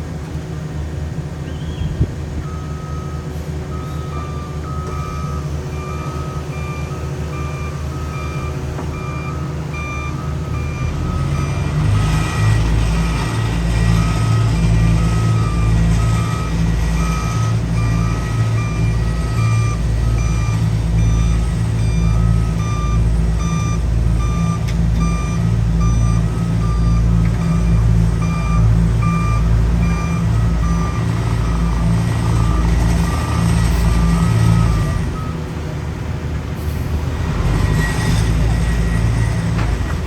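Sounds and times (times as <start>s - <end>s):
heavy machinery low rumble: 0.0s - 40.0s
reversing alarm beeps: 2.4s - 35.4s.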